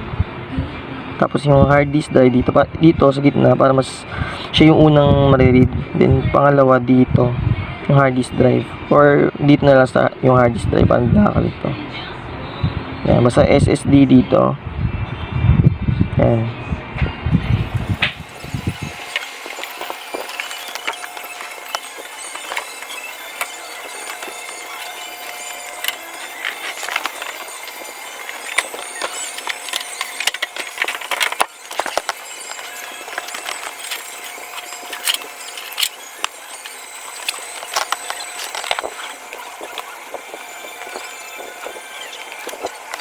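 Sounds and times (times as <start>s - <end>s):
computer parts clicking: 17.4s - 43.0s.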